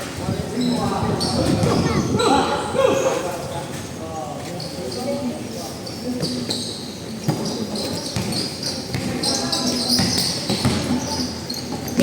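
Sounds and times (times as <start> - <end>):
chatter of people: 0.0 - 12.0
basketball bouncing: 8.2 - 11.1.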